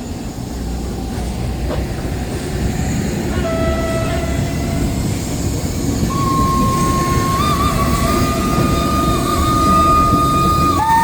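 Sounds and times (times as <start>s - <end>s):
train rumbling: 0.0s - 11.0s
higher train whistle: 3.3s - 5.1s, 6.1s - 11.0s
locomotive whistle: 3.3s - 5.2s, 6.0s - 11.0s.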